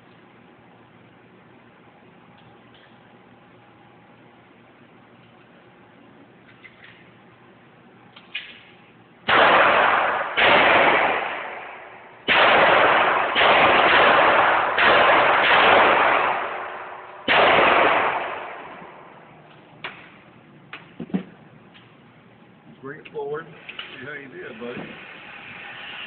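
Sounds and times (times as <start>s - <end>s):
gunshots with echoing tail: 9.3s - 19.3s.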